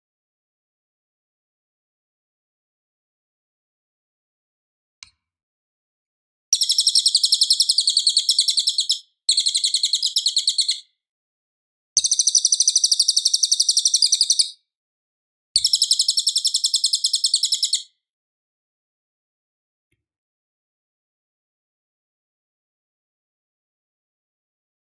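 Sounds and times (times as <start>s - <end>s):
bird trilling: 6.6s - 10.8s, 12.0s - 14.6s, 15.6s - 17.9s.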